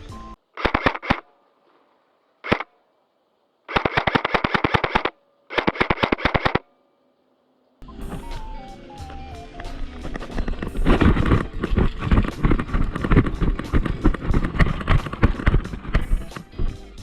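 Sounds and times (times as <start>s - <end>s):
airsoft gun firing: 0.6s - 1.4s, 2.4s - 2.8s, 3.7s - 6.7s.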